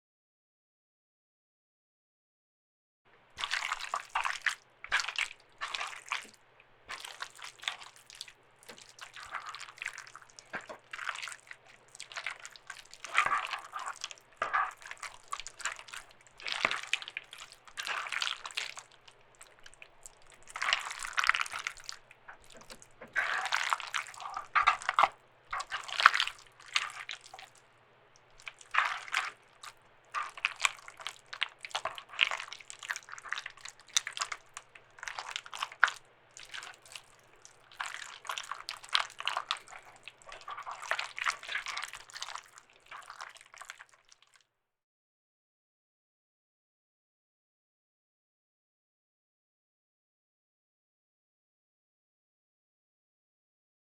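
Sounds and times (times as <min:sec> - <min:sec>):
wet squelching of raw meat: 0:03.4 - 0:44.4.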